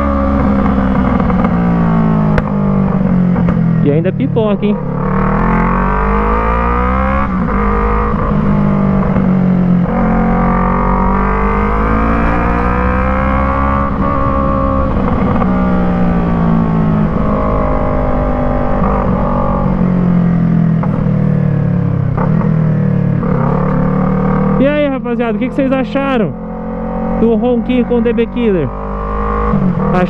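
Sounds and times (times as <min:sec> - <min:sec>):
engine revving and shifting gears: 0:00.0 - 0:30.0
motorcycle exhaust rumble: 0:00.0 - 0:30.0.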